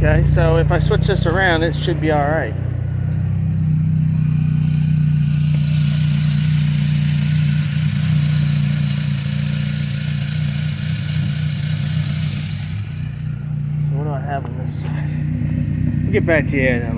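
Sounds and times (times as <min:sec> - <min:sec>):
motor humming: 0:00.0 - 0:16.9
hiss: 0:04.2 - 0:13.2.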